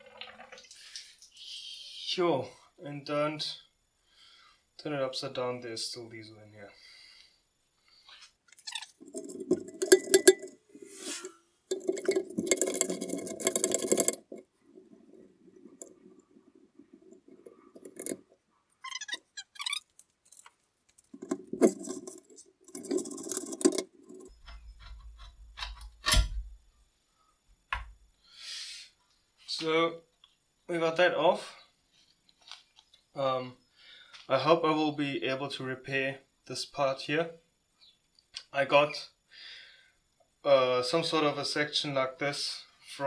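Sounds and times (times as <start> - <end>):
metal scraping and rattling: 8.8 - 18.4, 19.9 - 26.2
metal clinking on metal: 9.0 - 14.4.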